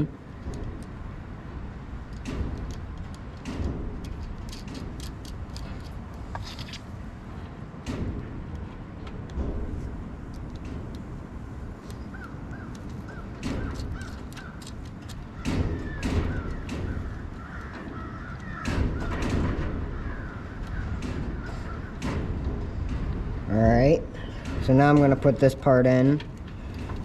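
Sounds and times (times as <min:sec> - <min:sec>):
metal parts knocking and clanking: 0:00.2 - 0:27.0
bird calling: 0:11.8 - 0:22.0.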